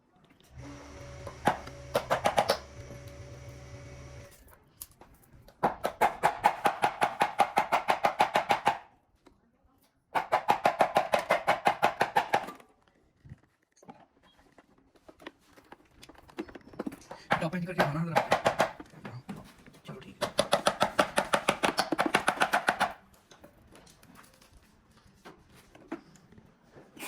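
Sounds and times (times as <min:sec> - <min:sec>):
power tool hammering: 0:00.6 - 0:04.3
steady mechanical hum: 0:00.6 - 0:04.4.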